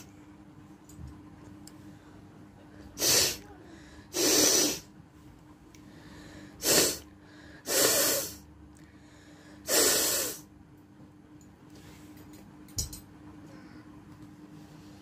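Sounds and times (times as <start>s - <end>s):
person blowing air through nose: 3.0s - 3.4s, 4.1s - 4.9s, 6.6s - 8.4s, 9.6s - 10.5s.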